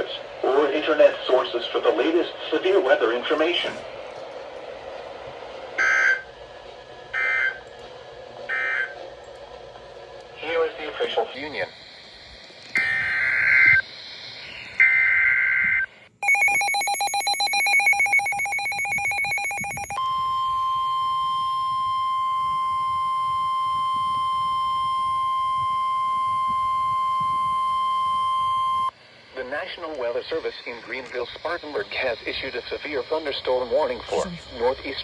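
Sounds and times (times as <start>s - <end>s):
steady alarm tone: 5.7s - 6.4s, 7.0s - 7.7s, 8.5s - 9.0s, 10.5s - 29.0s, 31.2s - 35.0s.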